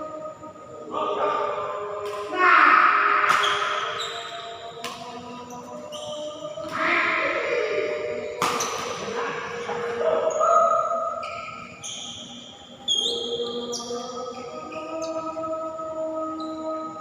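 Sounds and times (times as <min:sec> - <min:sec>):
badminton racket hitting shuttlecock: 0:08.4 - 0:09.0.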